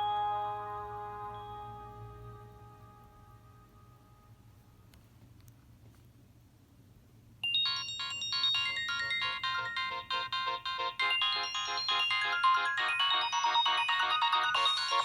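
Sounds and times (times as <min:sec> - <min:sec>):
mobile phone polyphonic ringtone: 0:00.0 - 0:02.7, 0:07.4 - 0:15.0.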